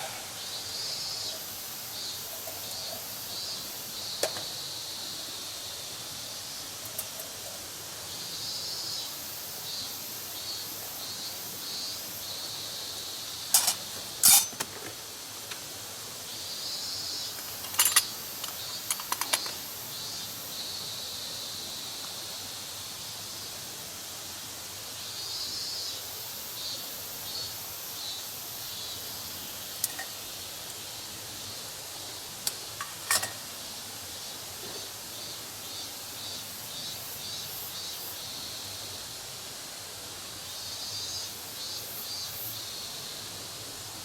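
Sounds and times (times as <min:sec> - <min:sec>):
fire hissing: 0:00.0 - 0:03.0.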